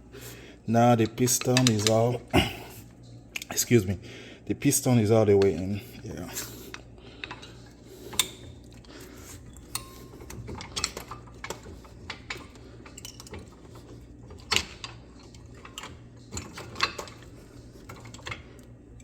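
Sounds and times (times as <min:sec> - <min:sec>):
metal tools clinking and knocking: 0:09.6 - 0:17.3.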